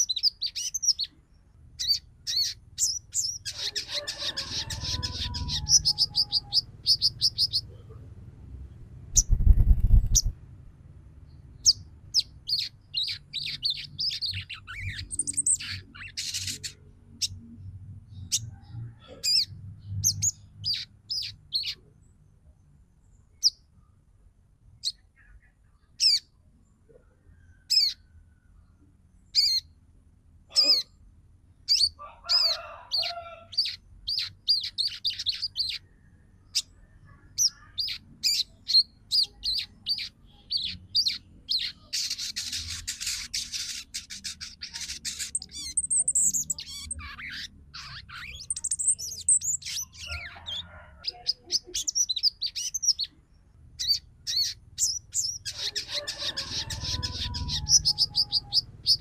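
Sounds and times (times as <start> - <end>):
sunbird chirping and chittering: 0.0 - 7.7, 9.1 - 10.4, 11.3 - 17.5, 19.3 - 21.9, 31.5 - 35.9, 37.3 - 59.0.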